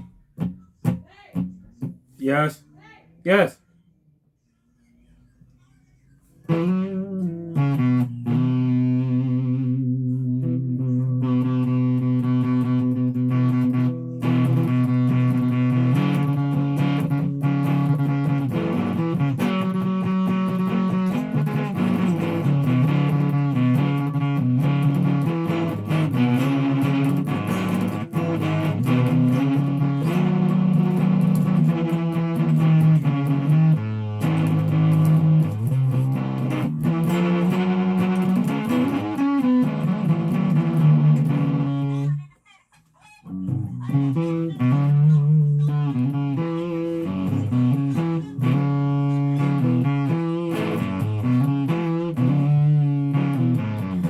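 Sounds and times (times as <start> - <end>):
guitar playing chords: 0.0 - 2.6, 6.5 - 42.3, 43.2 - 54.0.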